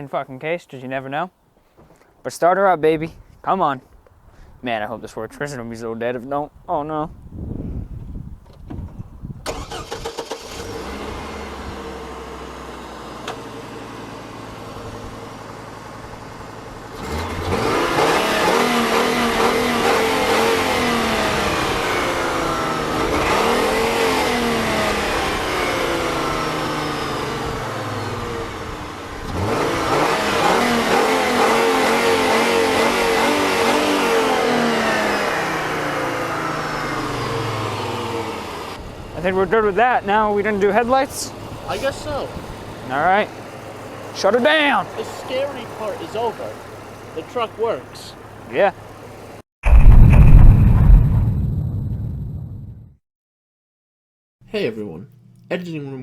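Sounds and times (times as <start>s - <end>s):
truck engine starting and revving: 9.4s - 52.8s.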